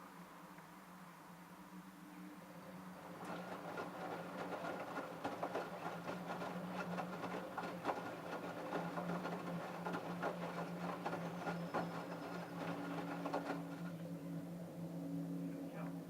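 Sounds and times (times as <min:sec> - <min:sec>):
washing machine motor hum: 0:02.6 - 0:14.2.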